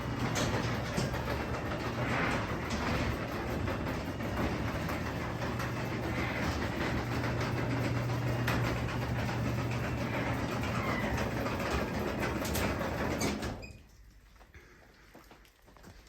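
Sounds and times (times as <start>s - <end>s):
garage door opener motor hum: 0.0s - 13.8s.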